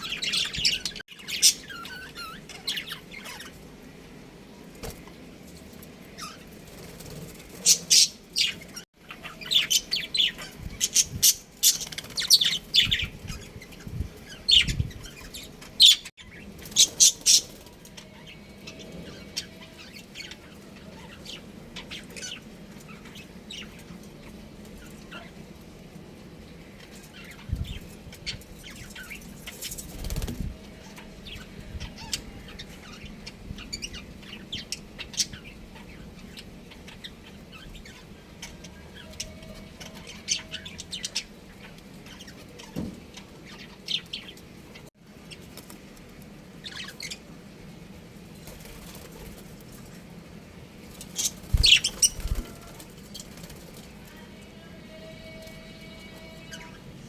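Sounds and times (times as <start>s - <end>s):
wing flapping: 29.5s - 30.6s, 48.4s - 49.8s, 51.1s - 54.0s
budgerigars chirping: 51.2s - 52.4s.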